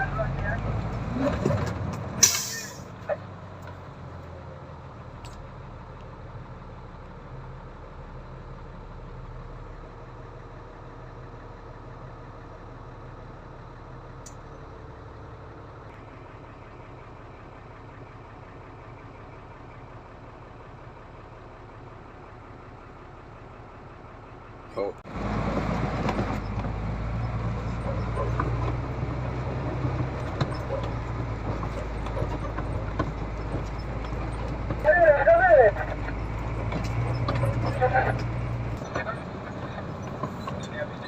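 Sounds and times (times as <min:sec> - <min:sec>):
diesel engine running: 0:00.0 - 0:41.0
short sharp hiss: 0:02.2 - 0:02.8.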